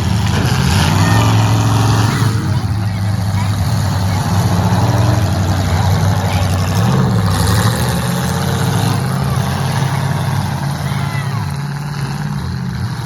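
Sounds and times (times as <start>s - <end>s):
car engines revving: 0.0s - 13.0s.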